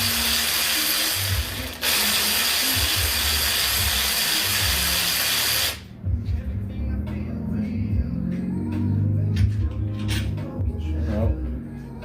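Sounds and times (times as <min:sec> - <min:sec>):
power tool running: 0:00.0 - 0:05.9
background music with a beat: 0:00.0 - 0:12.0.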